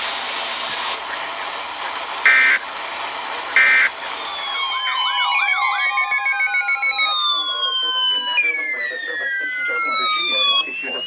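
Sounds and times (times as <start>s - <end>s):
data tone bursts: 2.3s - 2.6s, 3.6s - 11.0s
warbling electronic siren tones: 2.3s - 2.6s, 3.6s - 11.0s.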